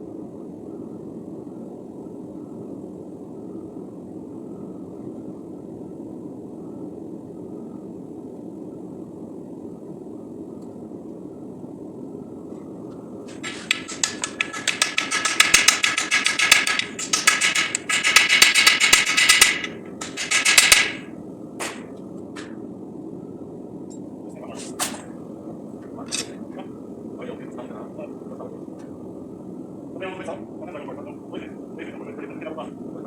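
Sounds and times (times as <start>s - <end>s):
hammer ringing on anvil: 13.3s - 21.8s.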